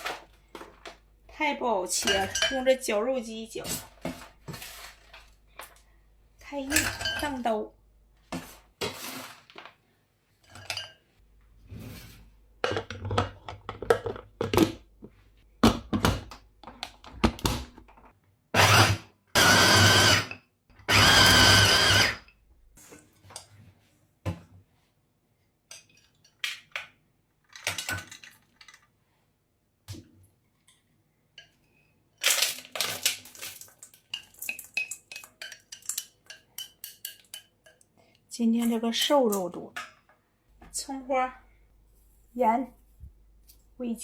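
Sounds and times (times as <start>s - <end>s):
meat grinder motor whirring: 18.6s - 22.2s.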